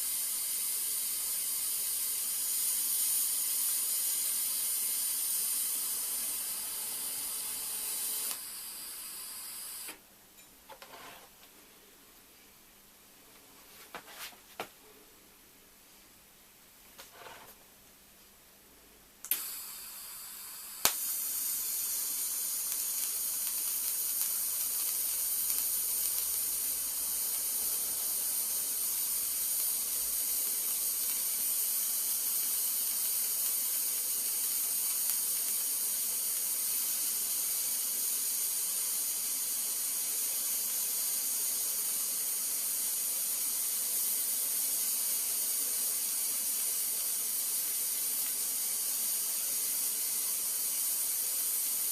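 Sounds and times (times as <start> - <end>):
welding arc hissing: 0.0 - 10.0, 19.2 - 51.9
welding torch click: 7.6 - 10.0, 19.2 - 42.0, 42.7 - 51.8.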